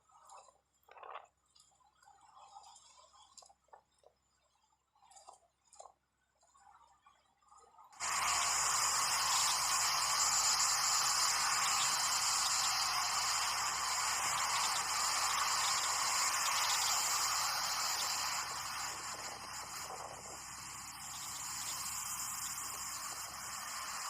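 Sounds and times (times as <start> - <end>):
steady static hiss: 8.0 - 24.0.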